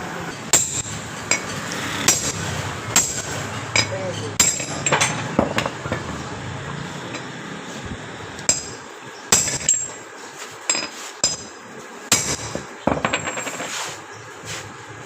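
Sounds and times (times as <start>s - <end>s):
metal tools striking metal: 0.4s - 6.2s, 8.5s - 10.0s, 10.7s - 13.7s.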